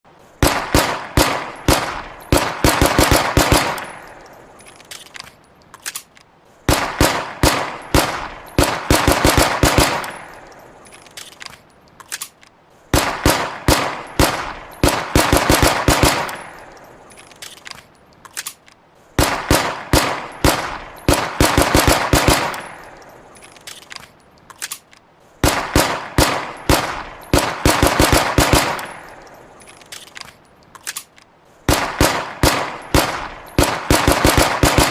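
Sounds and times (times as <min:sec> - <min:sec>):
pistol gunshots: 0:00.4 - 0:05.0, 0:06.7 - 0:11.4, 0:12.2 - 0:17.7, 0:19.2 - 0:23.8, 0:24.7 - 0:30.1, 0:31.7 - 0:34.9
faint clicks: 0:03.8 - 0:06.6, 0:10.0 - 0:12.8, 0:16.2 - 0:19.1, 0:22.5 - 0:25.3, 0:28.8 - 0:31.6.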